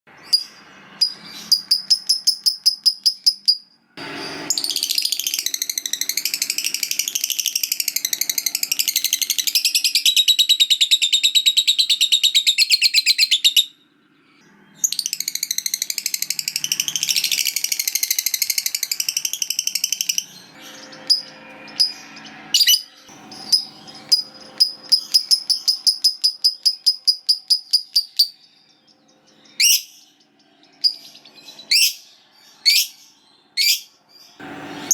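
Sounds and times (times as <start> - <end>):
lovebird chattering trills: 14.9 - 28.4.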